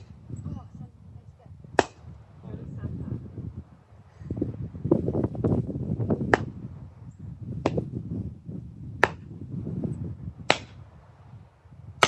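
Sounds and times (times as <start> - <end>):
axe chopping wood: 1.8 - 2.0, 6.2 - 6.6, 7.6 - 7.9, 9.0 - 9.3, 10.5 - 10.8.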